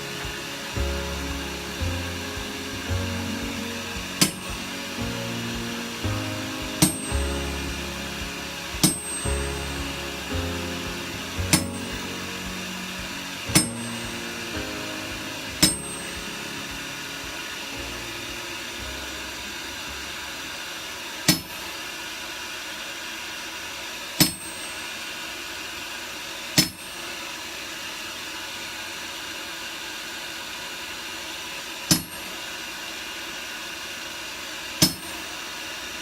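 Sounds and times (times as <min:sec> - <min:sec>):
steady hiss: 0:00.0 - 0:22.2.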